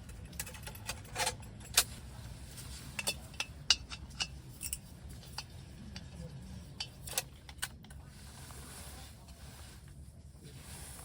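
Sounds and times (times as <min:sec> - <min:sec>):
clinks of metal and glass items: 0:00.0 - 0:02.0, 0:02.9 - 0:05.5.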